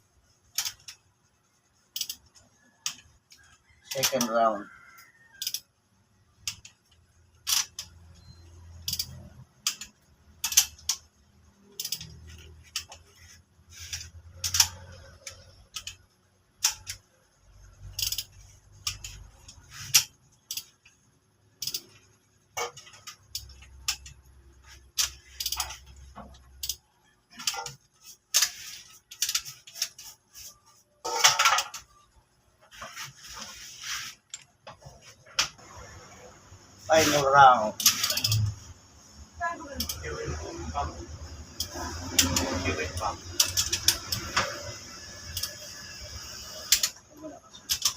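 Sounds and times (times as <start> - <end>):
torque wrench clicking: 1.9 - 2.3, 5.4 - 5.7, 8.8 - 11.0, 11.7 - 13.0, 13.9 - 17.0, 17.8 - 20.9, 21.6 - 21.9, 25.0 - 26.8, 37.8 - 38.5, 41.4 - 47.0.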